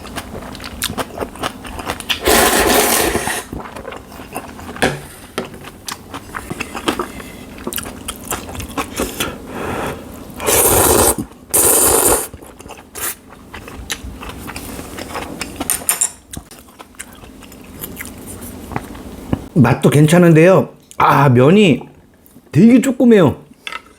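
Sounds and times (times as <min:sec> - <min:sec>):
wet chewing: 0:00.0 - 0:02.9, 0:03.5 - 0:09.4, 0:10.6 - 0:19.5
loud noodle slurps: 0:02.1 - 0:03.6, 0:08.9 - 0:12.4.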